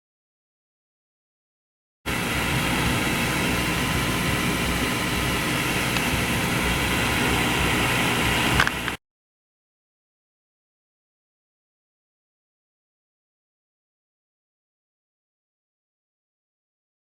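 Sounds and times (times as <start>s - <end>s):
hot air station airflow: 2.1s - 9.0s
small click: 8.6s - 9.0s.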